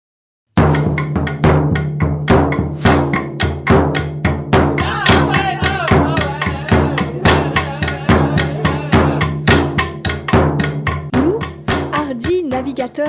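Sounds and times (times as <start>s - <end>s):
steady drum beat: 0.6s - 13.0s
wavering melody: 4.8s - 9.5s.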